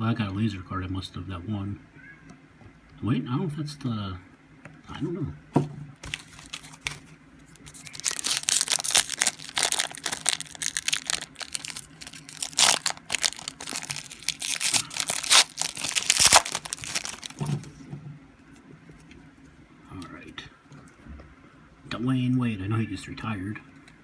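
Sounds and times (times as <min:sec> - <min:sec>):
wrapper tearing and crackling: 0:06.0 - 0:17.7.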